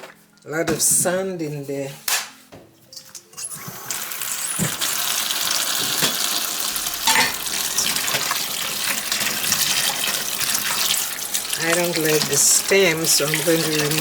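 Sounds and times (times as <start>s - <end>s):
tap water running into sink: 3.4s - 14.0s.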